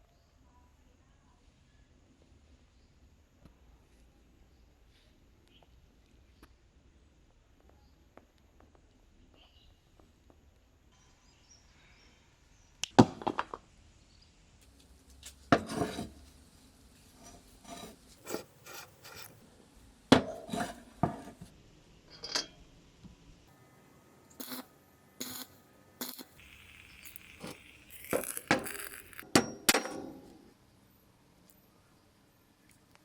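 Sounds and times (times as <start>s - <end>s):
metal parts clinking: 25.2s - 29.6s.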